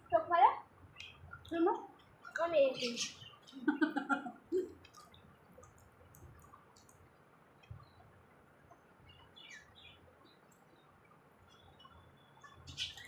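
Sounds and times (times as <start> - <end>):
faint bird chirps: 0.9 - 4.0, 7.6 - 13.0.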